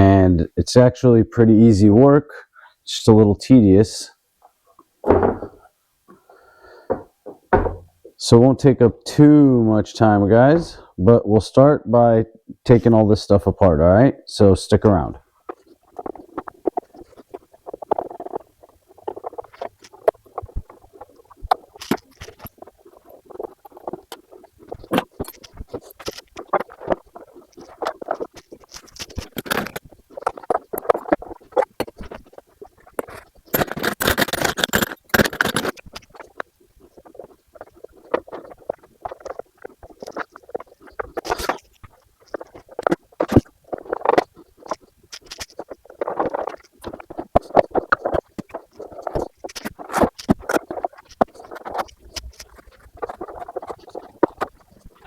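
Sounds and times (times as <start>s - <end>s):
handling clicks and knocks: 5.0s - 5.6s, 6.9s - 8.1s
harsh rasping noise: 15.4s - 55.0s.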